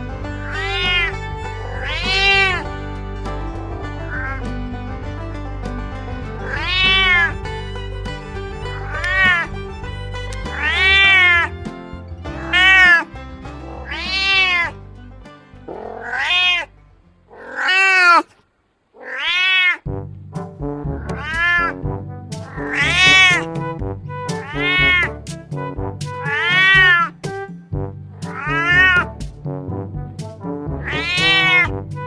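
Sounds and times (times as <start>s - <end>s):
background music: 0.0s - 17.4s, 19.9s - 32.0s
cat meowing: 0.4s - 2.7s, 6.4s - 7.4s, 8.9s - 9.5s, 10.5s - 11.6s, 12.3s - 13.1s, 13.7s - 14.7s, 15.7s - 16.7s, 17.3s - 18.3s, 19.0s - 19.8s, 21.2s - 21.7s, 22.5s - 23.4s, 24.4s - 25.1s, 26.3s - 27.2s, 28.3s - 29.1s, 30.8s - 31.7s.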